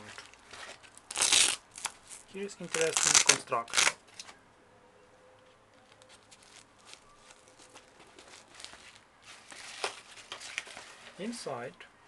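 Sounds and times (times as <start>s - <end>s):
fabric bag rustling: 6.1s - 11.3s.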